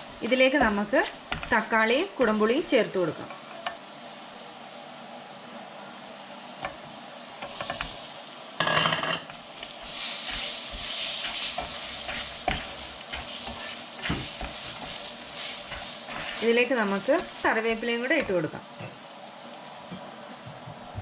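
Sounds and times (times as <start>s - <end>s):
spoon stirring a pan: 0.0s - 2.4s, 7.4s - 8.0s, 8.7s - 19.1s
food sizzling in hot oil: 0.0s - 21.0s.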